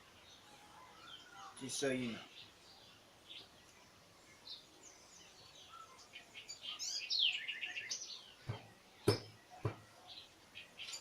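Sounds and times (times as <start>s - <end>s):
songbirds chirping: 0.0s - 11.0s
sharp knocks: 8.4s - 9.8s.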